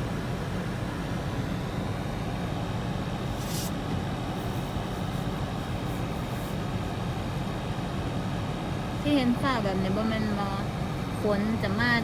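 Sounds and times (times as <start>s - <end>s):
short hiss: 3.4s - 3.8s.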